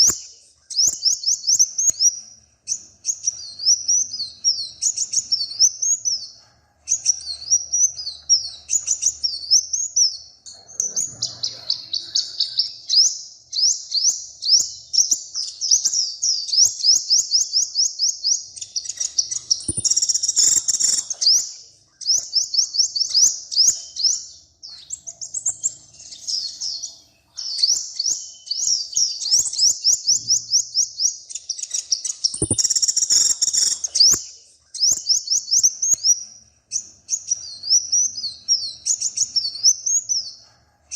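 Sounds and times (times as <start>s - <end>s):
songbird trilling: 18.6s - 21.4s, 31.6s - 34.2s.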